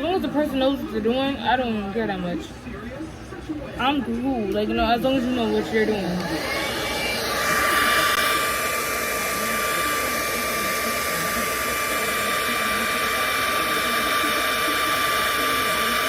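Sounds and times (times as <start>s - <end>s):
hair dryer whining: 4.4s - 16.0s.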